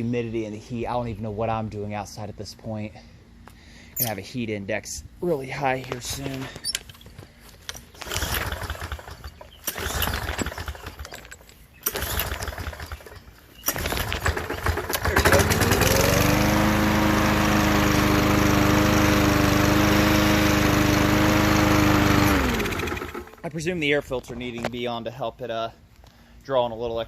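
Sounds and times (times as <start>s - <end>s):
lawn mower engine starting: 5.9s - 23.6s.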